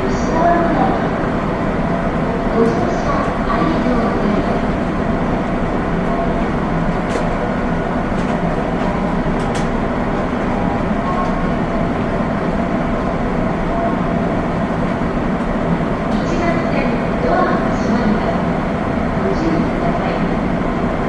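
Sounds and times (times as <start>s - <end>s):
wheels rumbling on rail: 0.0s - 21.0s.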